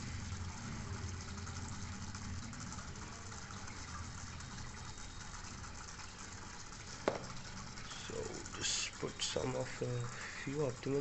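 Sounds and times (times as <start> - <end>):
low pump hum: 0.0 - 11.0
bubbling water hiss: 7.0 - 11.0.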